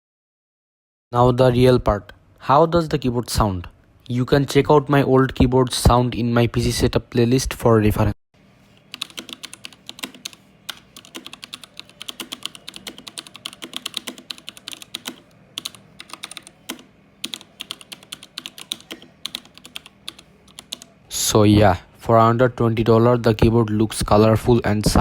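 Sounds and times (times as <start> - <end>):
mechanical keyboard clicks: 8.9 - 20.9.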